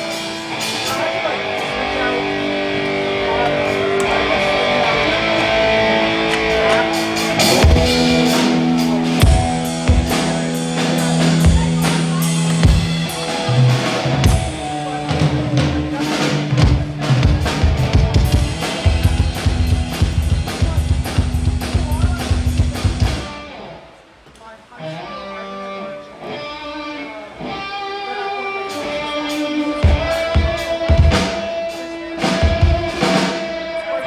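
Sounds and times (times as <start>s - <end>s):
live rock band playing: 0.0s - 23.9s, 25.0s - 34.0s
bass line: 1.2s - 23.4s.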